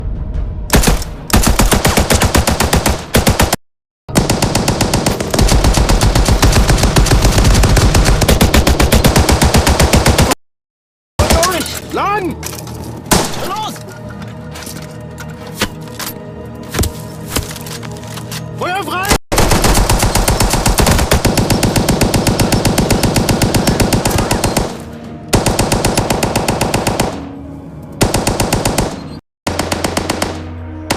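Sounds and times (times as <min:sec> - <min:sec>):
machine gun firing bursts: 0:00.7 - 0:10.4, 0:19.4 - 0:27.2, 0:28.0 - 0:30.4.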